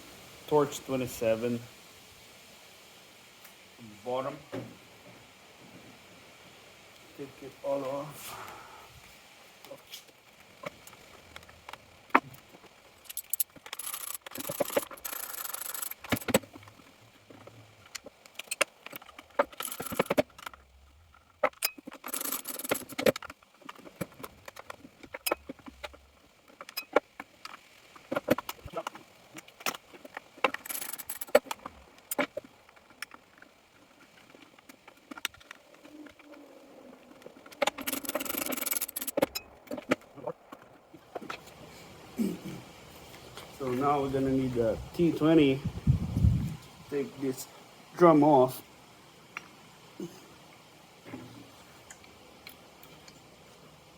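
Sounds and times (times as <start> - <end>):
metal tools and screws clinking: 13.0 - 16.3, 19.5 - 20.5, 21.5 - 23.1, 30.5 - 31.4, 37.6 - 39.6.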